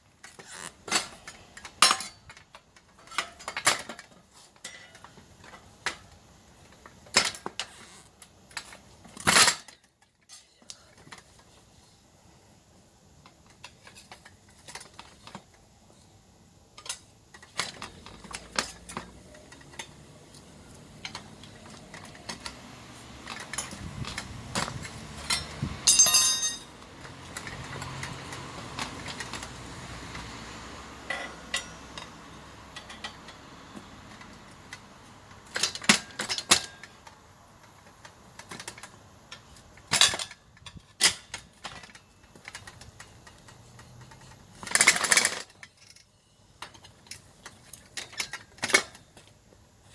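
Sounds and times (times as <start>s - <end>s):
tools clinking on metal rim: 0.2s - 4.0s, 8.6s - 10.7s, 23.2s - 28.2s, 31.1s - 32.1s.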